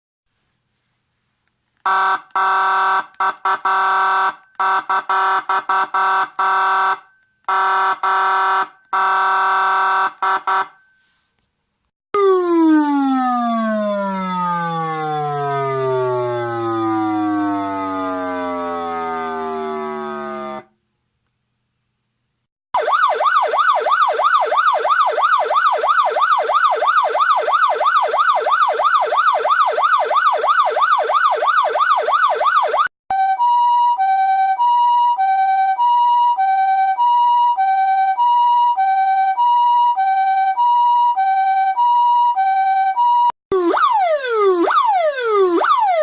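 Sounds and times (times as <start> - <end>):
electronic siren yelp and hi-lo: 12.2 - 20.7, 22.8 - 46.0.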